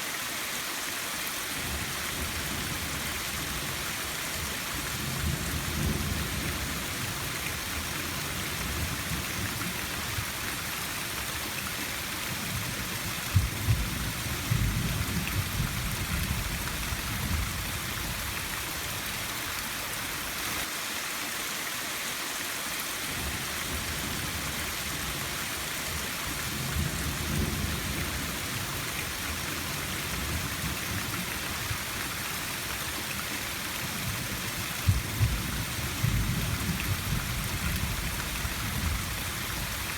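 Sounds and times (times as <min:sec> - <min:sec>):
heavy rain hissing: 0:00.0 - 0:39.9.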